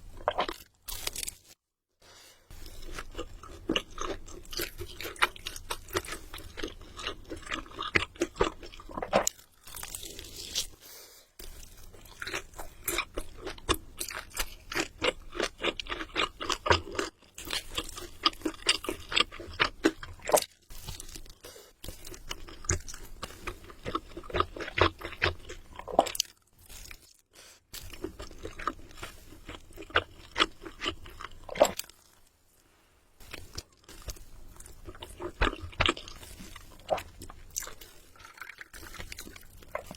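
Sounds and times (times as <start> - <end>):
crunching fried chicken: 0.2 - 1.6, 2.8 - 10.8, 11.5 - 32.2.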